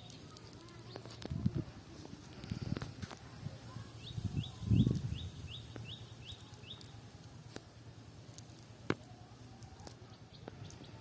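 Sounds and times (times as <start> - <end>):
bird chirping: 3.8 - 7.0, 9.9 - 11.0.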